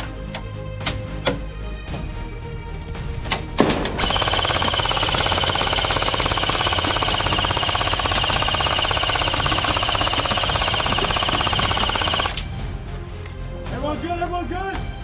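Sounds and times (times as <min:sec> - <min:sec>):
airsoft gun firing: 0:03.6 - 0:12.4.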